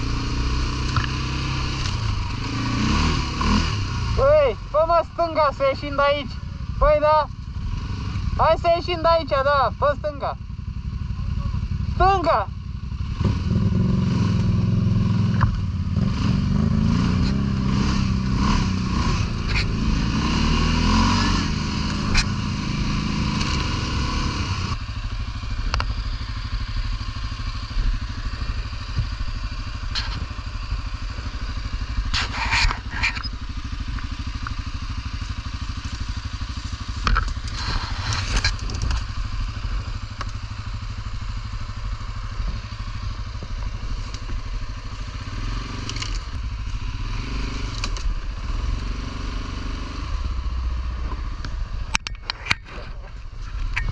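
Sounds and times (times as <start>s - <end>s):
atv engine revving: 0.0s - 53.9s
scrapes and cracks: 37.0s - 39.1s.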